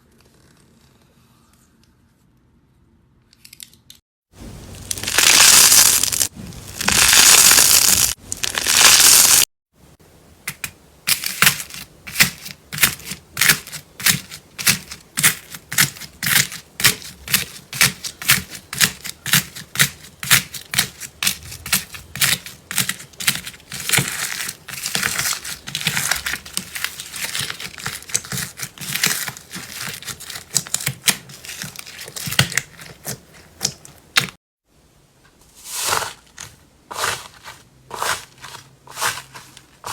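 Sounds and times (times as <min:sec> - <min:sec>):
slime crackles and pops: 0:04.8 - 0:09.4
slime crinkling and crushing: 0:04.8 - 0:09.5, 0:10.6 - 0:34.4.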